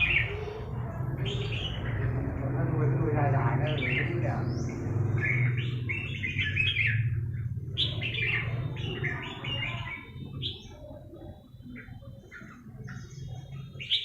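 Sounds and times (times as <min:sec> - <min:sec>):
steady low hum: 0:00.0 - 0:13.8
small birds chirping: 0:00.0 - 0:14.0.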